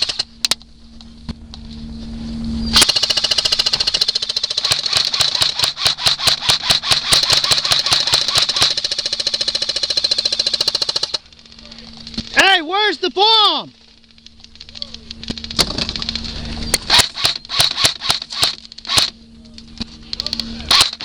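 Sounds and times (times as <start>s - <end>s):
motor hum: 0.0s - 21.0s
airsoft gun firing: 2.8s - 11.3s, 16.8s - 19.1s, 20.7s - 21.0s.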